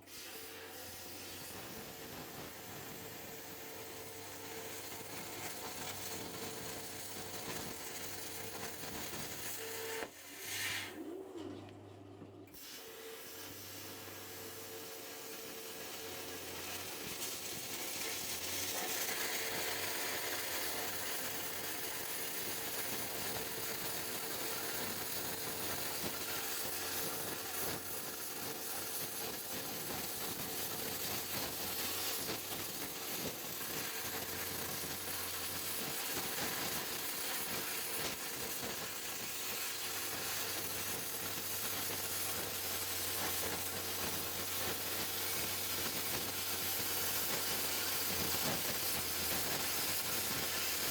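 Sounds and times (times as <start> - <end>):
plasma arc hissing: 15.2 - 50.9.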